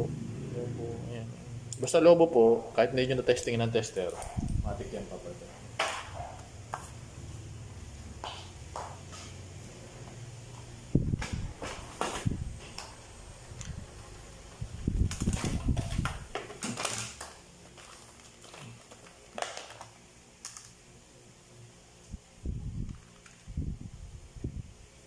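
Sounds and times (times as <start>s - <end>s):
electronic parts clicking and rustling: 12.6s - 20.8s, 22.8s - 23.6s.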